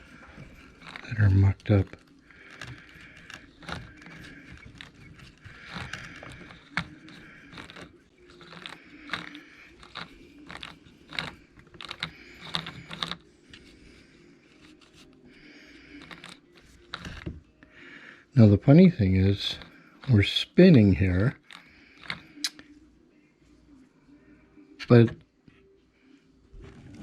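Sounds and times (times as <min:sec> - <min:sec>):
gear rattles: 0:00.0 - 0:13.2.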